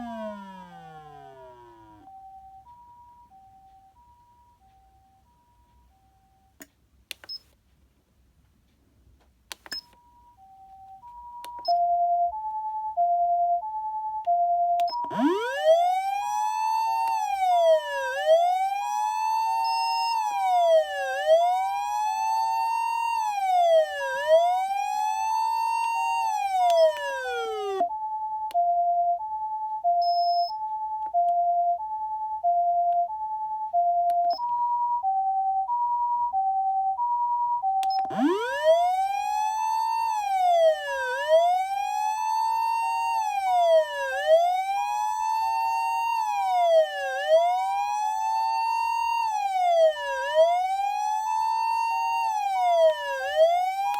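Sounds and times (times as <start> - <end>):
wailing siren: 0.0 - 2.4, 15.0 - 28.0, 37.7 - 53.9
two-tone ambulance siren: 0.0 - 5.5, 10.4 - 53.9.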